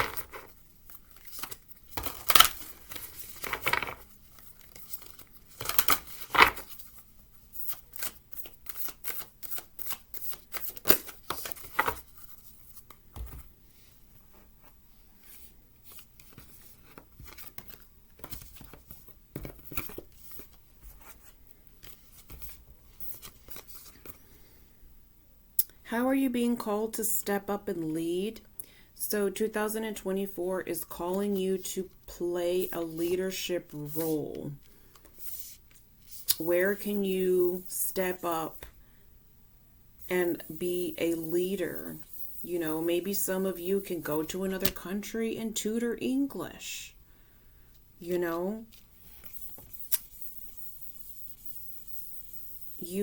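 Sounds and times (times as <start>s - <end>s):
cards being shuffled: 0.0s - 7.0s, 7.6s - 13.4s, 15.9s - 24.2s.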